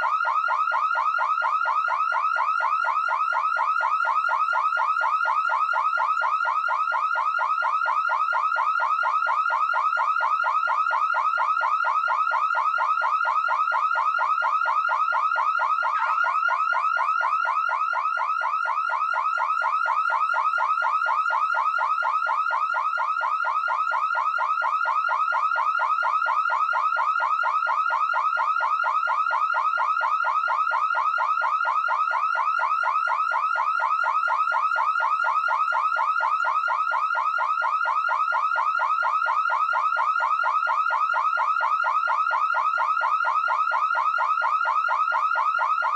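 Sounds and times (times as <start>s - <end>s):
electronic alarm siren whooping: 0.0s - 25.0s.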